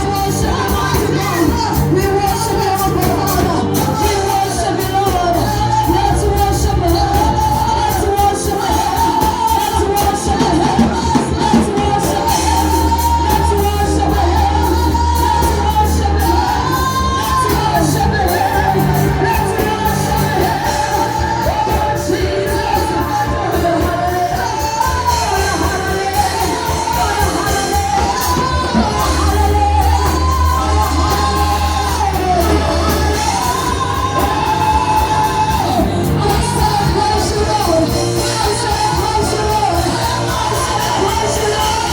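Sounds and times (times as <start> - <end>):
band playing: 0.0 - 41.9
person singing: 0.0 - 41.9.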